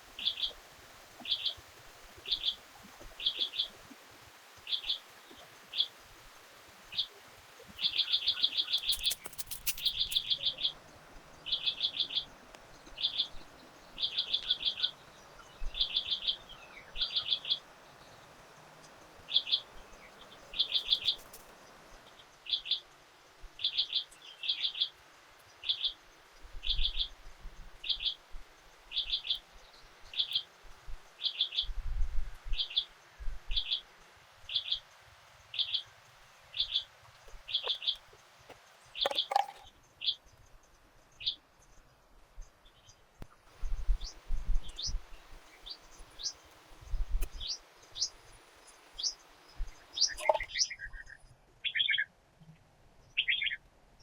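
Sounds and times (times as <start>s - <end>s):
bird chirping: 6.9s - 22.9s, 37.5s - 38.1s, 39.0s - 40.3s, 43.6s - 52.1s.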